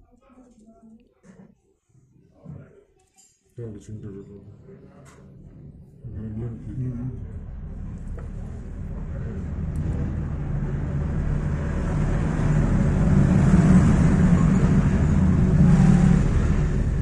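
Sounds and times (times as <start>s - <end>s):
vehicle engine rumble: 6.0s - 17.0s.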